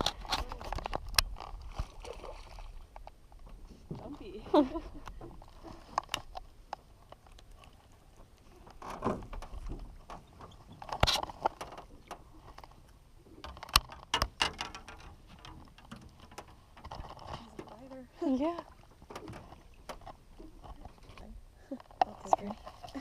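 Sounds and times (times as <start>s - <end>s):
fishing gear being handled: 8.6s - 12.9s, 13.5s - 23.0s.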